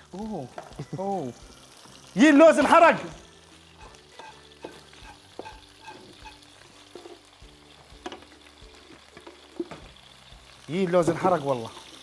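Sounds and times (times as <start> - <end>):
chicken frying in a pan: 0.0 - 12.0
utensil tapping against pan: 3.8 - 6.5.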